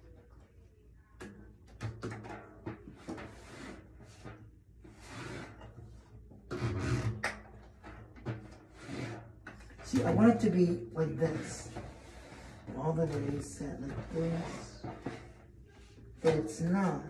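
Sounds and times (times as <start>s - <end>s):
drum hardware scrapes and clicks: 6.5s - 15.5s.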